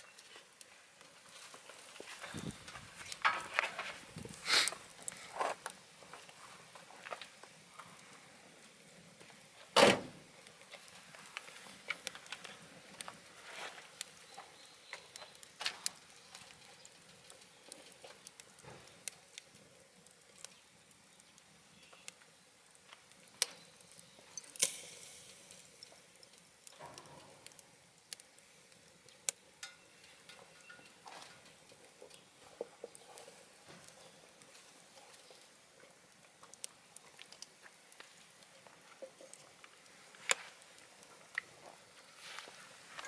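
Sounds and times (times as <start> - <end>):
faint fire hiss: 0.0 - 43.0
wood fire crackling and popping: 0.0 - 43.0.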